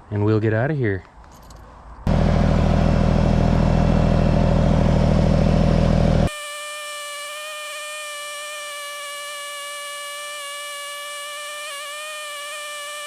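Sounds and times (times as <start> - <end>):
tractor diesel engine running: 2.1 - 6.3
steady high-pitched hum: 6.2 - 13.0.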